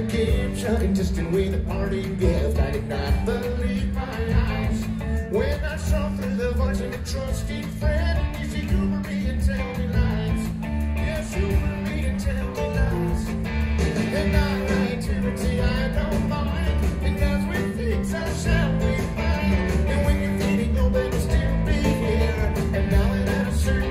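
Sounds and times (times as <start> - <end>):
bass guitar: 0.0 - 23.9
drums: 0.0 - 23.9
electric guitar: 0.0 - 23.9
person singing: 0.0 - 23.9.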